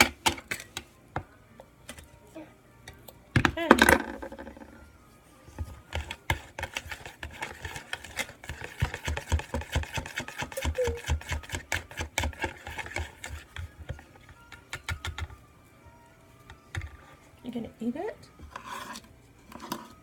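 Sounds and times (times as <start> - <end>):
spoon clacking against mixing bowl: 5.9 - 15.4.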